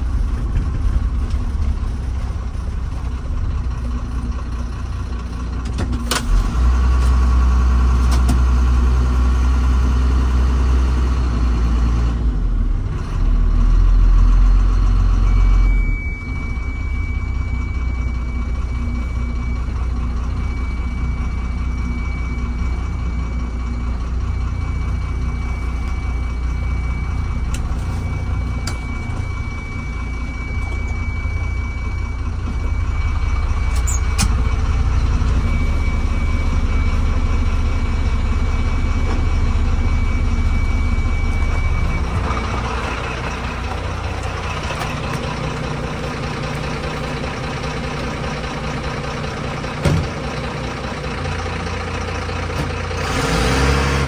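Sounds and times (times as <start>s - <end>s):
high whine: 0.0s - 5.8s, 15.2s - 48.2s
diesel engine running: 0.0s - 54.0s.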